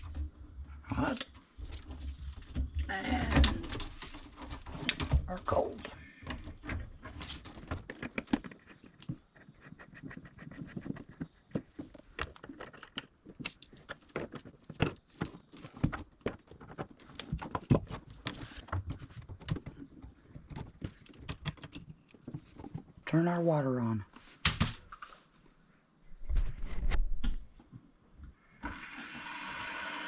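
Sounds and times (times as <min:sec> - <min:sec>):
plumbing fittings clicking and knocking: 0:00.0 - 0:23.0.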